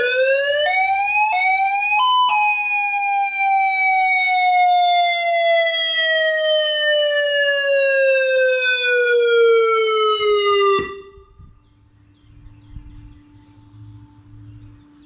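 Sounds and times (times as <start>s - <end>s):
siren tone gliding downward: 0.0s - 11.4s
distant siren tone: 0.0s - 11.5s.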